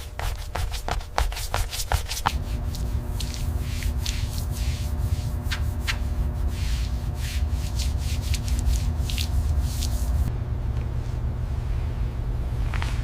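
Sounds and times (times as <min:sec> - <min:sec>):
rubbing strokes on a surface: 0:00.0 - 0:10.3
low workshop hum: 0:00.0 - 0:13.0.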